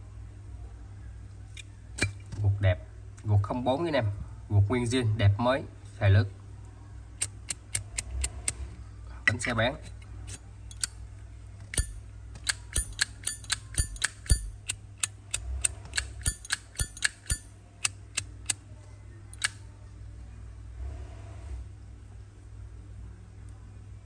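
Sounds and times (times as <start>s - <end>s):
lighter clicking: 11.7s - 18.6s.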